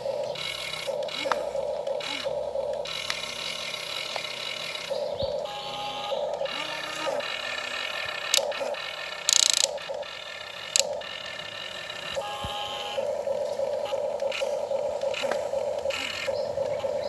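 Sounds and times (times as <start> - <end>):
small electric motors whining: 0.0 - 17.0
sharp clicks: 7.8 - 11.4.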